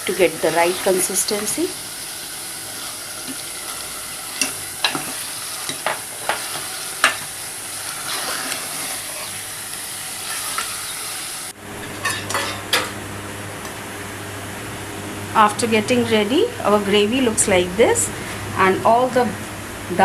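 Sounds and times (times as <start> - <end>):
gravy sizzling in a pan: 0.0 - 12.8.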